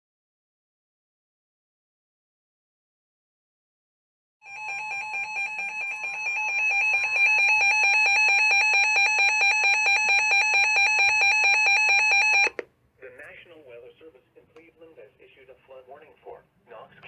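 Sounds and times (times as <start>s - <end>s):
pulsing electronic alarm tone: 4.4s - 12.6s.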